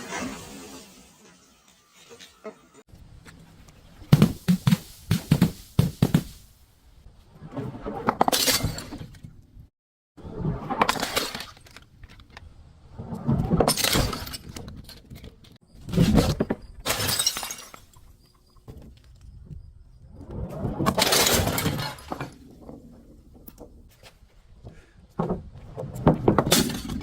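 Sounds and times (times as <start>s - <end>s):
glass smashing and crunching: 16.9s - 18.0s.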